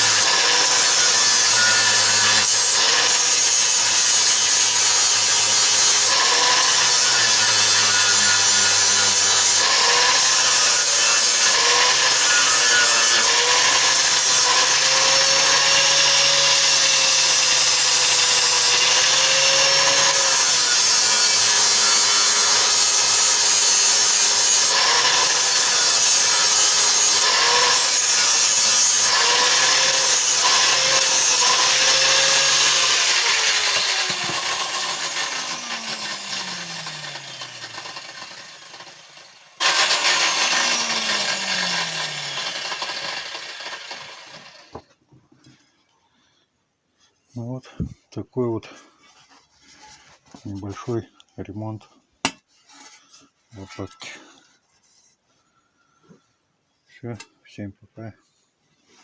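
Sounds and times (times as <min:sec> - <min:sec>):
angle grinder grinding metal: 0:00.0 - 0:44.8.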